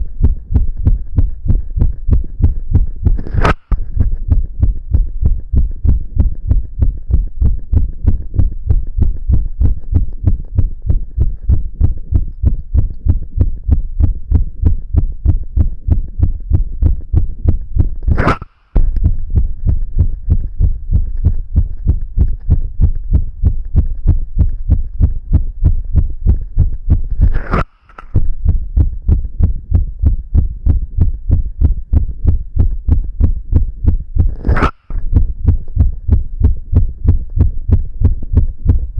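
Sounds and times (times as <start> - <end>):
fast heartbeat: 0.0 - 38.9
sharp click: 3.2 - 4.0, 18.0 - 19.0, 27.2 - 28.2, 34.4 - 35.0.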